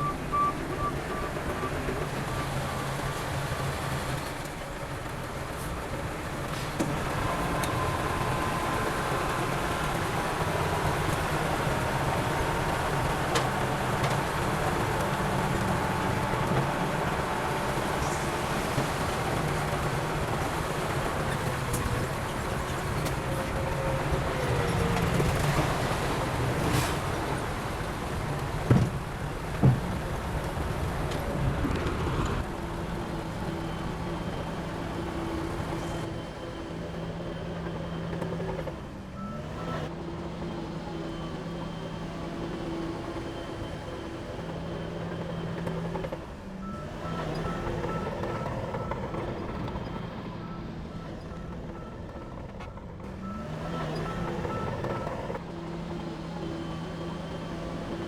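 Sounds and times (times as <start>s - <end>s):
faint repeating beep: 0.0s - 2.5s
diesel machinery running: 0.0s - 58.0s.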